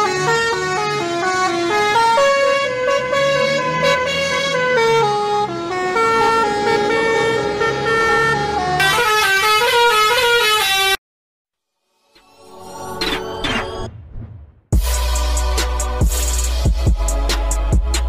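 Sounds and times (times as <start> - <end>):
multi-tone bus horn playing a tune: 0.0 - 11.0.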